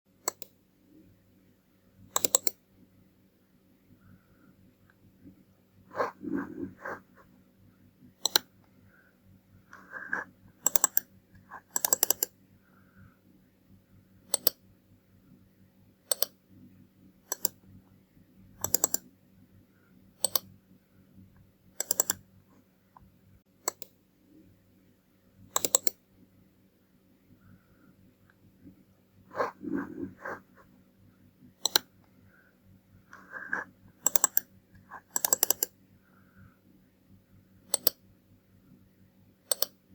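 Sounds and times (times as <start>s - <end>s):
faint steady hum: 0.1s - 39.9s
computer mouse buttons clicking: 0.2s - 0.6s, 2.1s - 2.6s, 8.2s - 8.7s, 9.7s - 12.4s, 14.3s - 14.6s, 16.1s - 16.4s, 17.2s - 17.6s, 18.6s - 19.1s, 20.2s - 20.5s, 21.8s - 22.2s, 23.6s - 24.0s, 25.5s - 26.0s, 31.6s - 31.9s, 33.1s - 35.8s, 37.7s - 38.0s, 39.5s - 39.8s.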